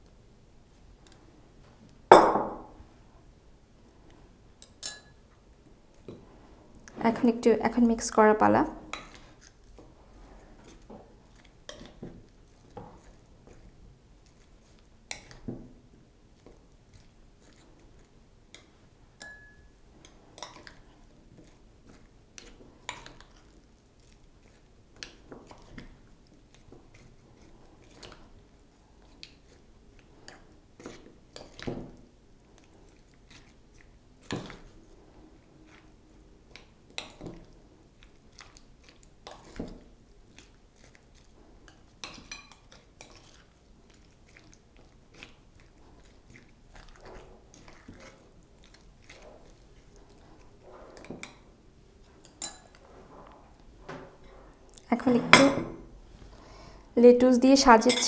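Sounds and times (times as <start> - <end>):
utensil mixing salad in bowl: 4.0 - 55.5.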